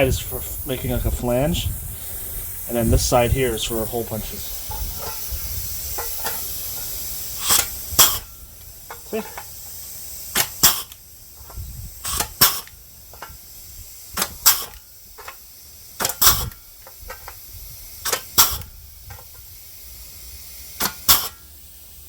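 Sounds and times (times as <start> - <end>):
hole punch snapping through metal: 10.4 - 11.0, 14.2 - 15.4, 16.0 - 17.4, 18.0 - 18.7, 20.8 - 21.4.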